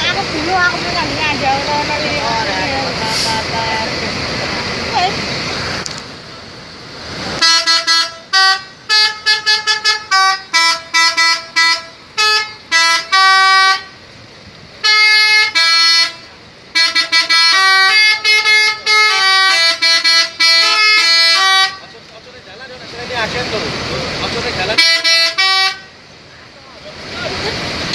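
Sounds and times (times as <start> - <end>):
musical bus horn honks: 7.4 - 14.0, 14.8 - 21.9, 24.7 - 25.9.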